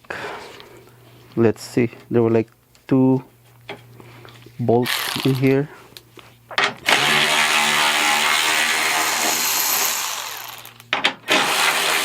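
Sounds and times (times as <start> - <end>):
power tool spinning bolt: 4.8 - 5.6, 6.6 - 12.0.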